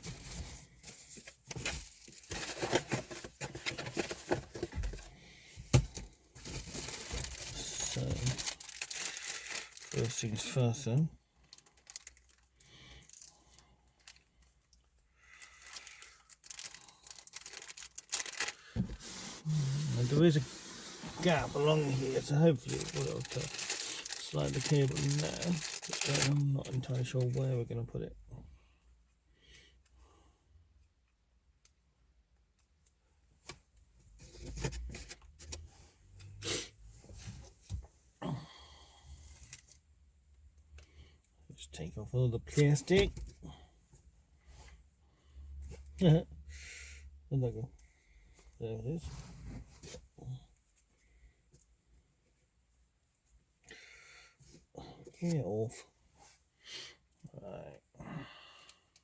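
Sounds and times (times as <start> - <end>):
packaging rustling and crinkling: 0.0 - 10.6, 11.4 - 12.5, 15.4 - 27.5.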